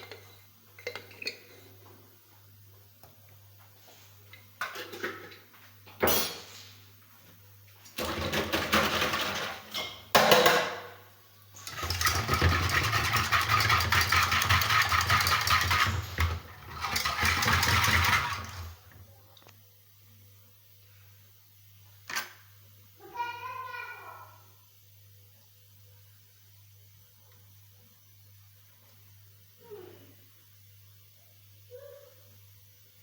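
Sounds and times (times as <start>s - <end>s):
kitchen appliance motor running: 11.6s - 18.9s.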